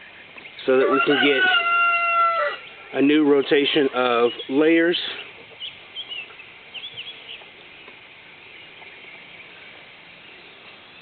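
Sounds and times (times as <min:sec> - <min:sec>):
faint background noise: 0:00.0 - 0:11.0
high bird chirps: 0:04.1 - 0:11.0.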